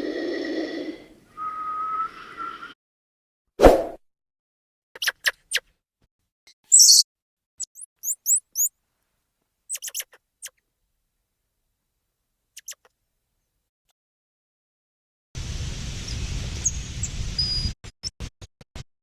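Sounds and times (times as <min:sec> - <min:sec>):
high bird-like chirps: 0:06.7 - 0:07.0, 0:07.6 - 0:08.7, 0:09.7 - 0:10.1.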